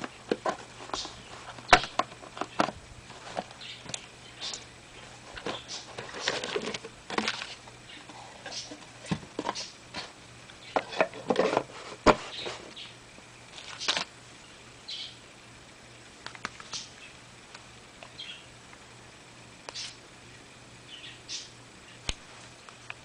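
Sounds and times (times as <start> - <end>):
packaging clicks and rustles: 5.3 - 7.7, 13.5 - 14.1.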